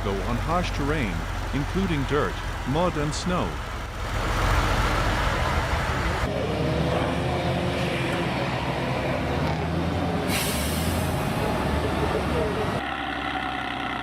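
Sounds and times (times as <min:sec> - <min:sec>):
diesel truck engine running: 0:00.0 - 0:14.0
air release hiss: 0:10.3 - 0:11.1.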